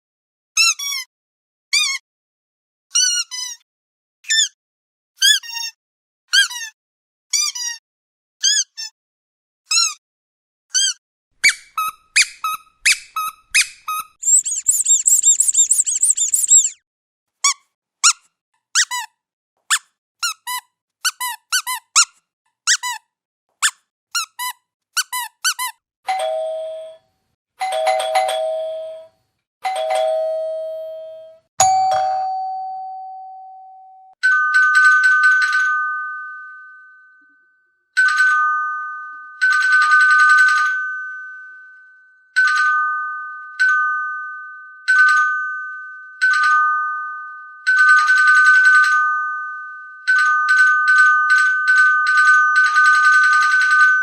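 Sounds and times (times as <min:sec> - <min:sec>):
short high squeaks: 0:10.7 - 0:16.8
doorbell ding-dong chimes: 0:27.6 - 0:29.1, 0:29.7 - 0:37.6
electronic doorbell ringing: 0:27.6 - 0:29.1, 0:29.7 - 0:37.2.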